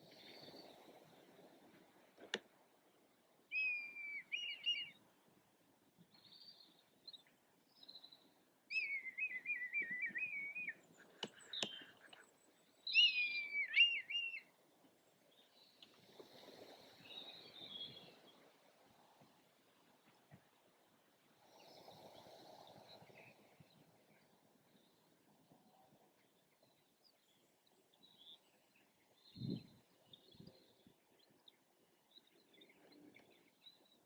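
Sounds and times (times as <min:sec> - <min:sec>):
bird whistled calls: 0:03.5 - 0:05.0, 0:08.7 - 0:10.8, 0:12.9 - 0:14.5.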